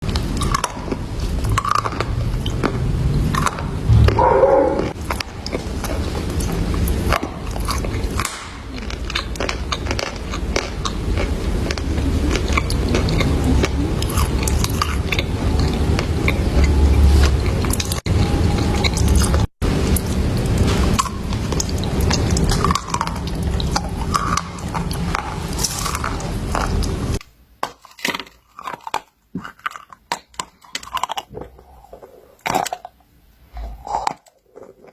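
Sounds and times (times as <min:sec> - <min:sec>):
chalk crunching while chewed: 0:00.0 - 0:34.9
low rumble: 0:02.2 - 0:07.2.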